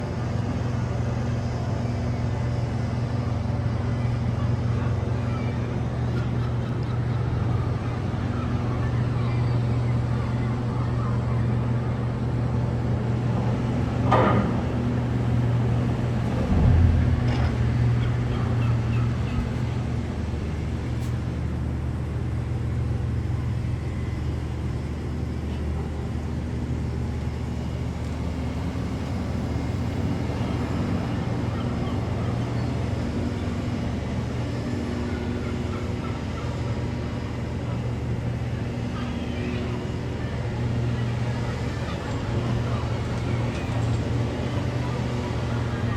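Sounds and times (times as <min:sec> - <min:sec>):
boat engine humming: 0:04.2 - 0:33.3.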